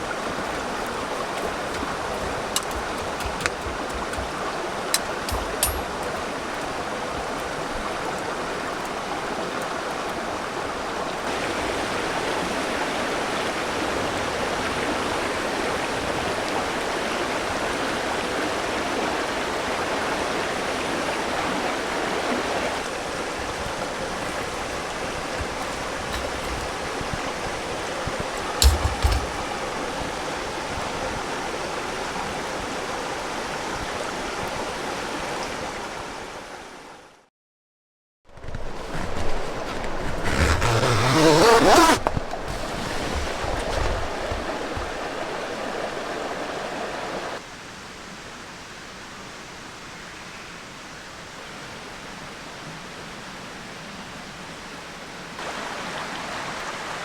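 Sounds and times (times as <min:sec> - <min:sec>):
river water rushing: 0:00.0 - 0:37.1, 0:39.1 - 0:49.9, 0:51.2 - 0:57.0
knocks: 0:00.5 - 0:06.3, 0:24.3 - 0:29.6.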